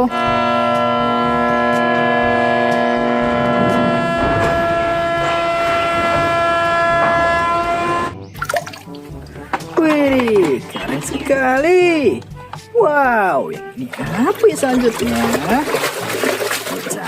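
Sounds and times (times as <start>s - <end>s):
ship's horn blast: 0.0s - 8.2s.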